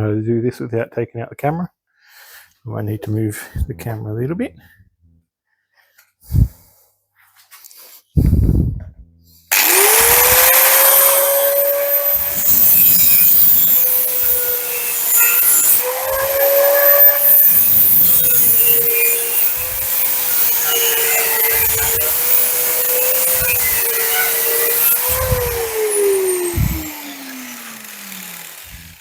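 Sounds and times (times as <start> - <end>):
angle grinder cutting metal: 9.5 - 29.0.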